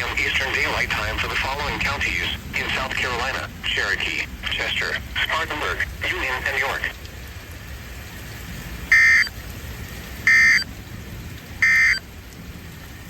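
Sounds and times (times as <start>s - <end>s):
steady radio hiss: 0.0s - 7.1s.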